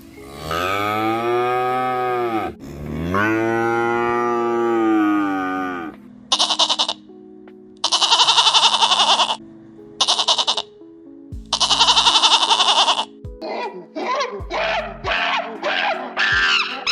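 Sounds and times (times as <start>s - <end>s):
cow mooing: 0.2s - 7.0s
short quavering bleat: 5.3s - 7.0s, 7.8s - 9.4s, 10.0s - 10.7s, 11.5s - 13.2s.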